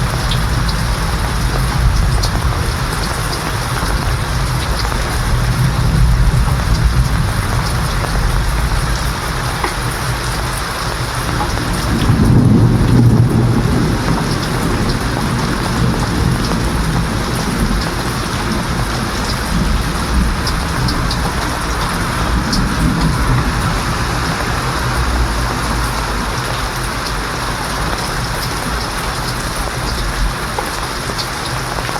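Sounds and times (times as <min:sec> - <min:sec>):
low roll of thunder: 0:00.0 - 0:30.5
heavy rain falling: 0:00.0 - 0:31.9.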